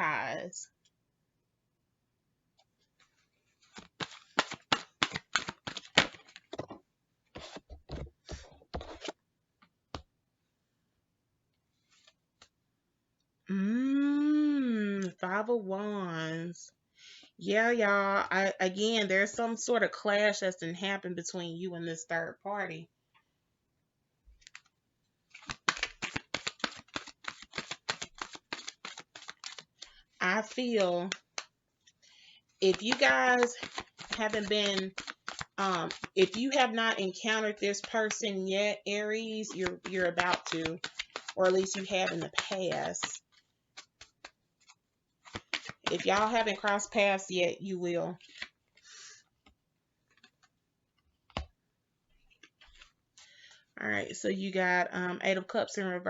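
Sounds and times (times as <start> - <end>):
cards being shuffled: 2.8 - 6.8, 7.4 - 9.2, 11.8 - 12.5, 24.3 - 24.7, 25.3 - 31.9, 32.6 - 38.4, 39.1 - 47.2, 48.1 - 51.5, 52.1 - 53.3.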